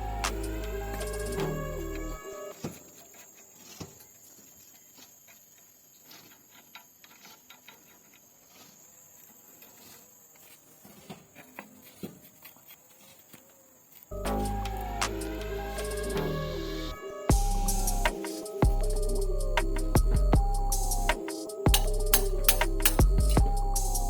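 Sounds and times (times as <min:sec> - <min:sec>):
steady high hiss: 0:14.2 - 0:24.0
loud music: 0:17.3 - 0:24.0.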